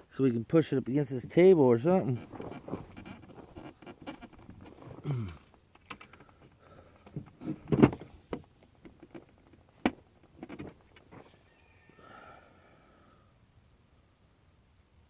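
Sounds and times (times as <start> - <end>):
plastic and metal parts clicking: 5.3 - 11.1.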